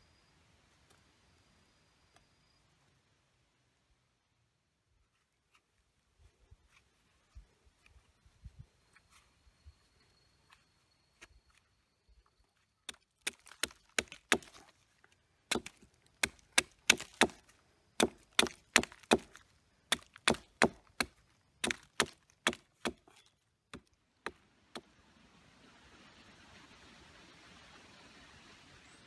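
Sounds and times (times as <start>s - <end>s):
firewood chopping strikes: 12.9s - 14.7s, 15.5s - 24.4s.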